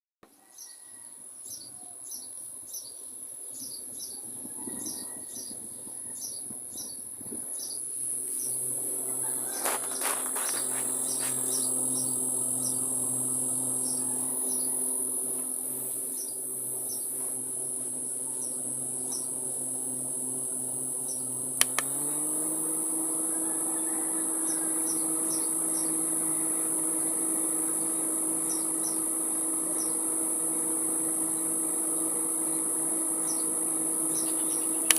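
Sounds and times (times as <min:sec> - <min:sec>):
electric fan humming: 0:05.2 - 0:34.9
crickets chirping: 0:07.6 - 0:21.7, 0:23.2 - 0:34.9
fan switch click: 0:21.5 - 0:22.3.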